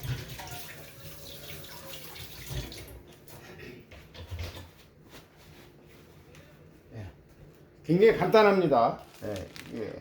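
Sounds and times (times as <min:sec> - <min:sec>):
kitchen tap running: 0:00.0 - 0:03.2.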